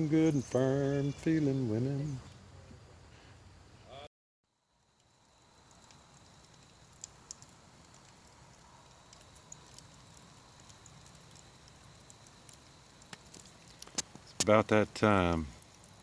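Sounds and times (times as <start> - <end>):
faint outdoor hiss: 0.0 - 16.0
small clicks: 5.0 - 10.0.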